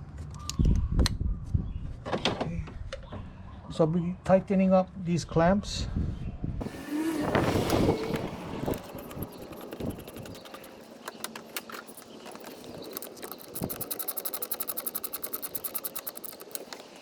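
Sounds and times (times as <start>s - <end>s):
scattered clicks and knocks: 7.7s - 17.0s
ratchet clicking: 8.6s - 17.0s.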